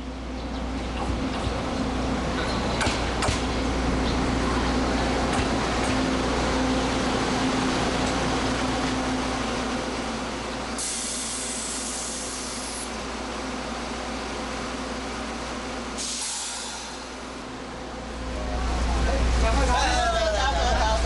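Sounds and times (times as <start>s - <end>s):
train humming: 0.0s - 21.0s
air hissing: 10.8s - 12.9s, 16.0s - 17.2s.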